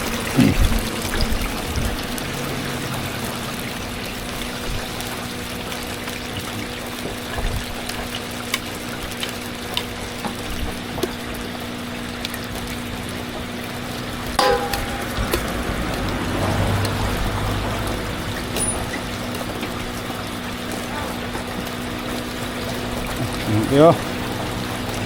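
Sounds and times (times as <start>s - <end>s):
food sizzling in oil: 10.3s - 22.9s
low steady hum: 14.4s - 15.7s.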